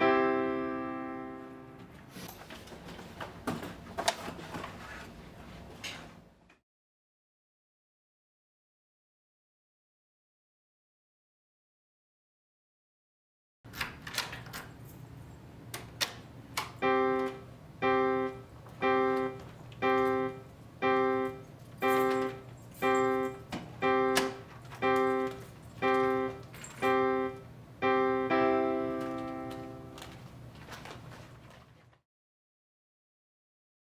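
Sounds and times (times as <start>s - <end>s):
pulsing electric piano alarm chord: 0.0s - 2.0s, 16.8s - 30.0s.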